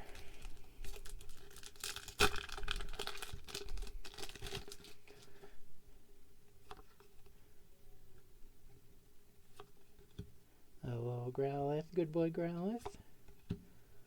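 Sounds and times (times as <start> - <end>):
foil wrapper ripping: 0.0 - 5.2
foil wrapper crinkling: 0.0 - 5.4.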